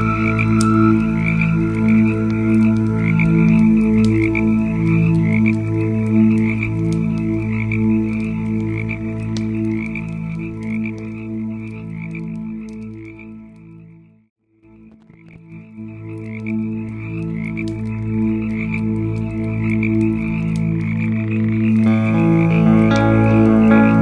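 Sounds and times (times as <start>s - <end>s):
high warbling trill: 0.0s - 6.0s, 21.7s - 24.0s
chorus of low tones: 0.0s - 9.4s, 21.7s - 24.0s.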